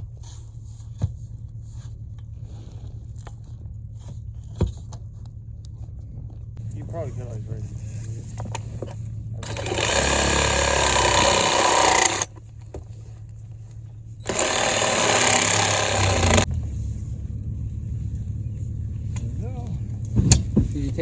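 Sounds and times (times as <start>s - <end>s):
power tool running: 9.4s - 12.3s, 14.2s - 16.5s
idling engine hum: 14.2s - 21.0s.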